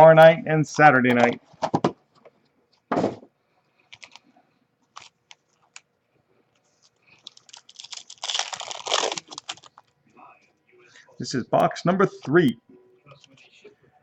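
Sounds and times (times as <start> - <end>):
foil pack crinkling: 3.9 - 5.8, 6.7 - 9.9.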